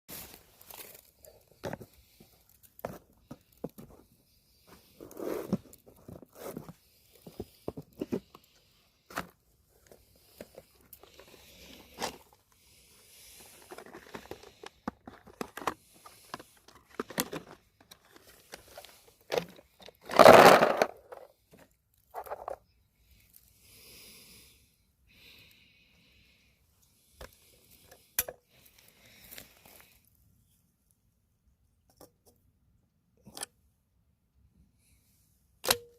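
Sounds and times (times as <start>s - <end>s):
handling clicks and rustles: 13.2s - 22.7s.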